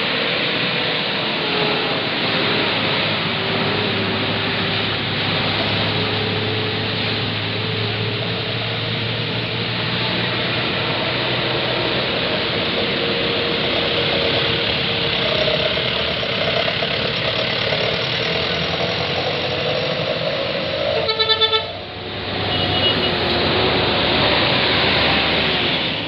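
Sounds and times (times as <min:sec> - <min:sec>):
bus passing: 0:00.0 - 0:26.0
heavy road traffic: 0:00.0 - 0:26.0
stuttering air horn toots: 0:20.8 - 0:24.0.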